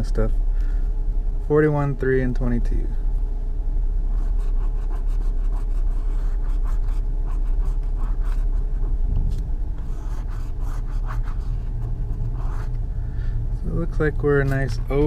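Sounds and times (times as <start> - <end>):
car rumble: 5.3 - 15.0.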